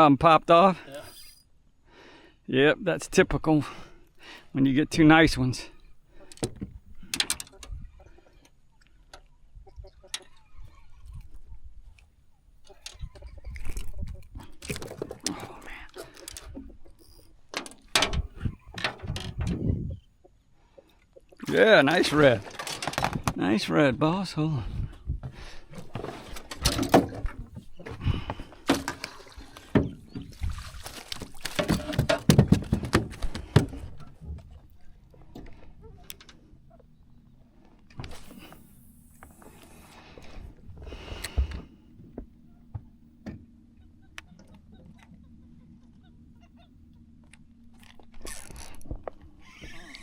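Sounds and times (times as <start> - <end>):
knocks and thumps on boat deck: 31.5 - 34.5.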